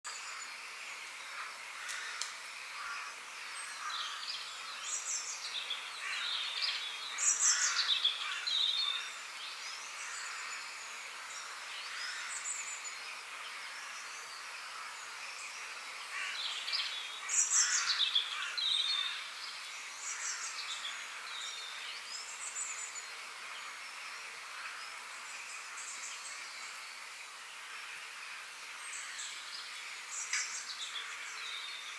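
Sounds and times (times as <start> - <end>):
forest background hiss: 0.0 - 31.9
birds chirping and calling: 0.1 - 26.8.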